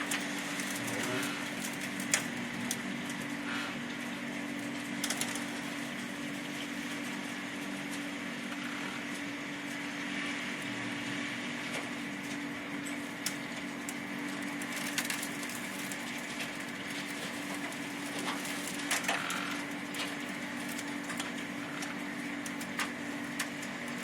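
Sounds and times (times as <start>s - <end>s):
hailstones striking hard surfaces: 13.2s - 24.0s.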